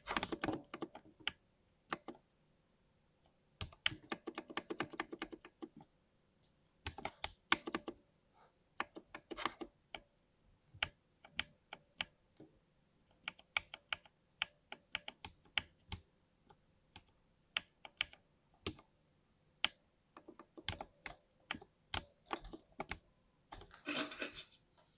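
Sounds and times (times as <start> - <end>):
mechanical keyboard typing: 0.0 - 2.2, 3.6 - 5.8, 6.9 - 8.0, 19.6 - 23.7.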